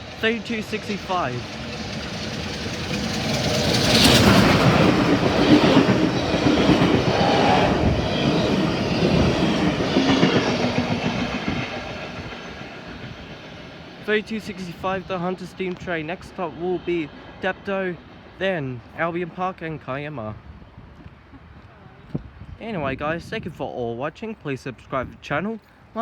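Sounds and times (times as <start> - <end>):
train wheels clattering over rail joints: 0.0 - 7.2
steam train passing: 0.0 - 20.1.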